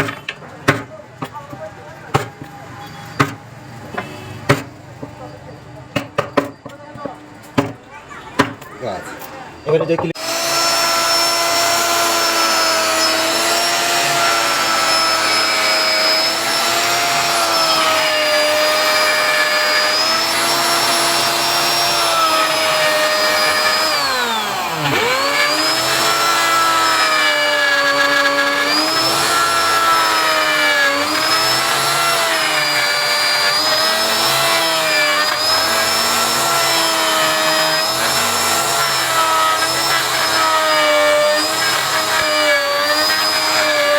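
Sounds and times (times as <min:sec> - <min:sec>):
electric motor whining: 0:10.2 - 0:43.9.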